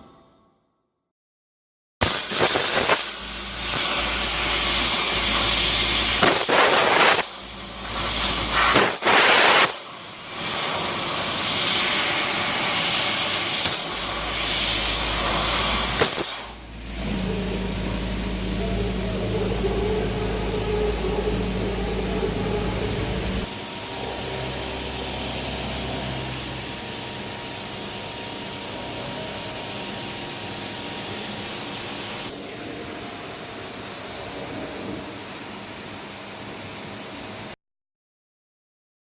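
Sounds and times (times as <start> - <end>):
laser cutter gas hiss: 2.0 - 32.4
steady machine hum: 2.0 - 37.3.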